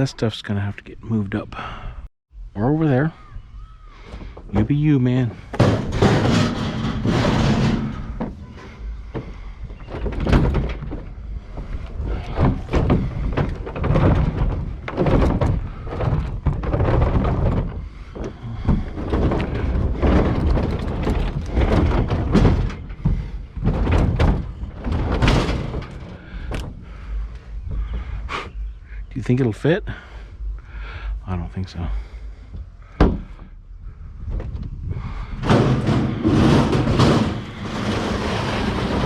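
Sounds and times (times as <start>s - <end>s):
scrap metal thunking: 4.0s - 28.7s, 34.3s - 39.0s.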